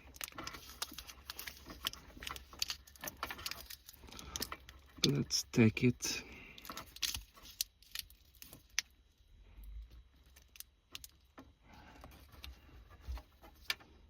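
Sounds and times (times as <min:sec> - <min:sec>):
wiring connector clicks and rattles: 0:00.0 - 0:05.2, 0:10.2 - 0:11.5.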